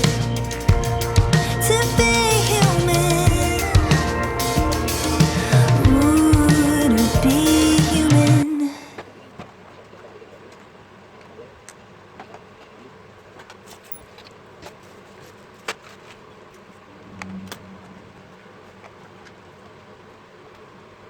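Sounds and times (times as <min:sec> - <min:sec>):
faint background noise: 0:00.0 - 0:21.0.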